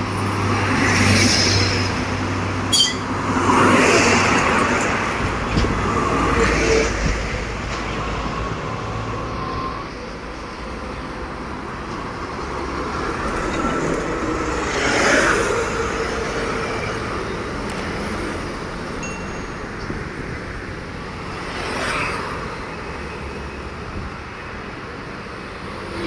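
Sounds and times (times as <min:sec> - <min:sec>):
heavy trucks passing: 0:00.0 - 0:26.0.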